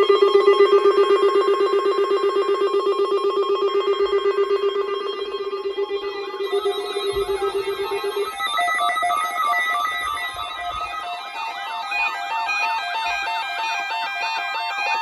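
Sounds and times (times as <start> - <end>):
soft guitar-like music: 3.6 - 15.0
warbling electronic alert tone: 4.9 - 10.5.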